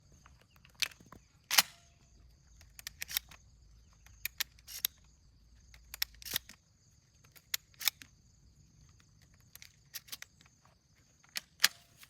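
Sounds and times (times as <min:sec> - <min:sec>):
shotgun metallic clicks: 0:00.5 - 0:05.1, 0:05.7 - 0:06.6, 0:07.2 - 0:08.2, 0:08.8 - 0:10.5, 0:11.2 - 0:12.0.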